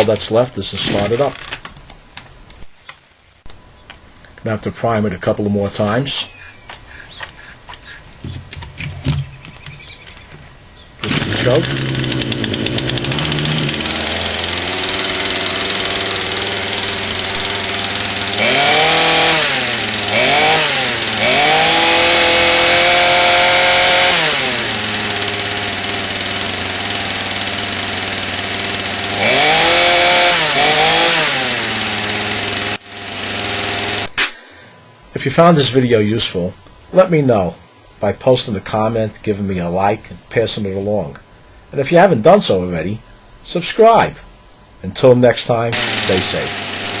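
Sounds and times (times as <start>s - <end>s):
chainsaw engine idling and revving: 0.8s - 1.5s, 11.0s - 34.3s, 45.7s - 47.0s.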